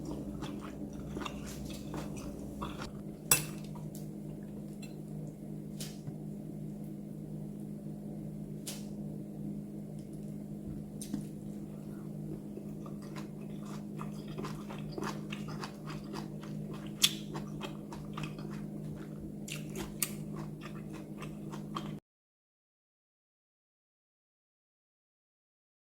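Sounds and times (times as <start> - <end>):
person chewing food: 0.0 - 6.2, 11.0 - 22.0
low hum: 0.0 - 22.0.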